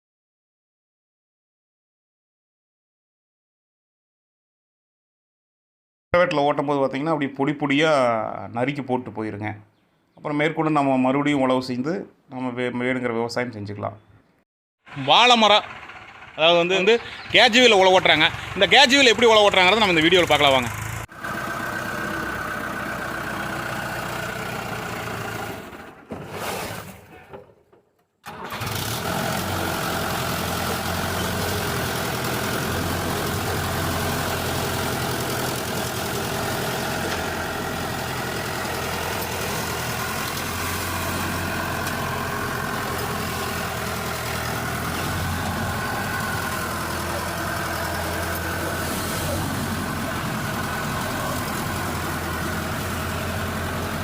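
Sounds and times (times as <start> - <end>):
tractor engine running: 14.9 - 26.1, 28.3 - 54.0.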